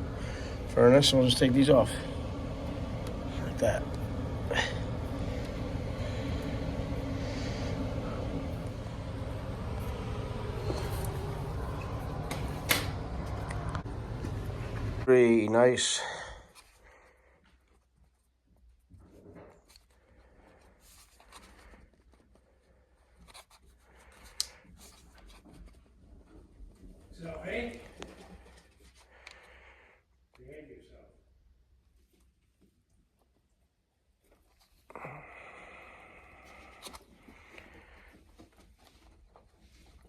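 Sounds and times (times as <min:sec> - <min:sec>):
furnace blower rumble: 0:00.0 - 0:16.4
objects rustling and scraping: 0:05.1 - 0:15.0, 0:16.4 - 0:29.6, 0:36.4 - 0:40.0
furnace click: 0:10.4 - 0:14.9.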